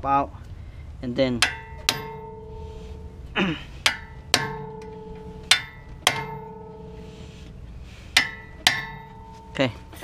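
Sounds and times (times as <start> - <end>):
hammer striking metal driver: 1.4 - 2.6, 3.8 - 6.8, 8.1 - 9.3.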